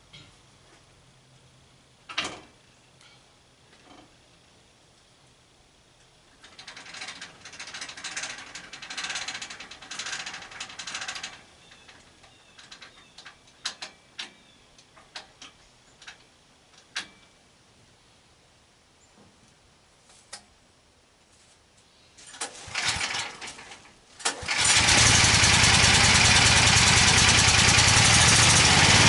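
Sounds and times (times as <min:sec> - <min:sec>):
sharp clicks and knocks: 0:06.4 - 0:17.3.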